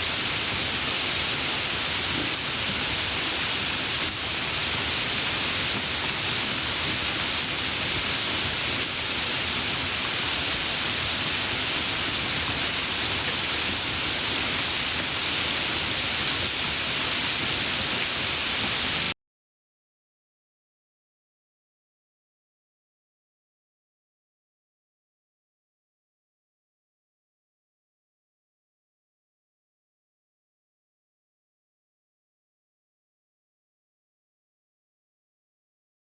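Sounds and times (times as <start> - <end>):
gentle rain falling: 0.0 - 19.2.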